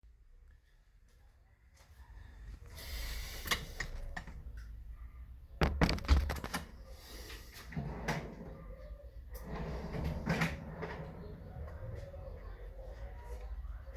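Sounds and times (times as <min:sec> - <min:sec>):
clicks and knocks: 0:05.6 - 0:06.7
heavy thuds: 0:05.6 - 0:06.7.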